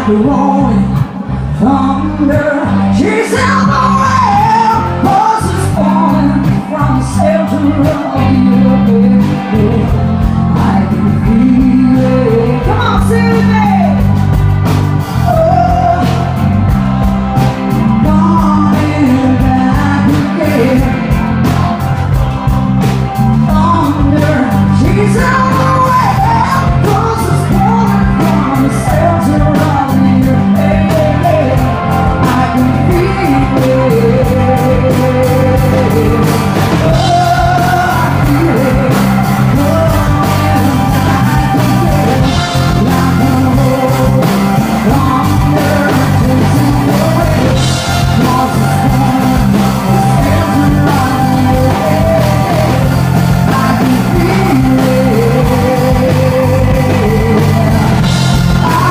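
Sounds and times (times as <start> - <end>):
woman singing wordless vocal runs: 0.0 - 14.0, 23.5 - 58.9
live rock band playing: 0.0 - 58.9.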